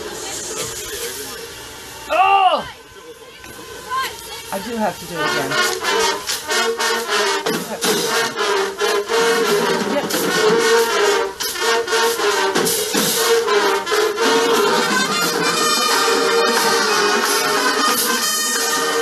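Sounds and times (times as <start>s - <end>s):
marching band playing: 4.5s - 19.0s
brass chords: 5.1s - 19.0s.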